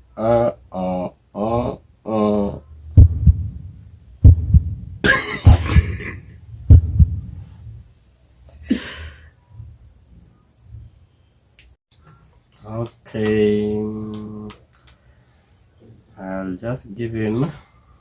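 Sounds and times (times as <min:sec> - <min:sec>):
loud dull low thumps: 0:02.9 - 0:07.7.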